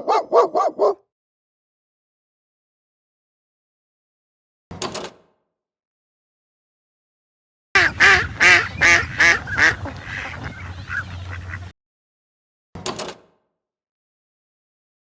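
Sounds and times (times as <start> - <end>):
duck quacking: 7.8 - 11.7.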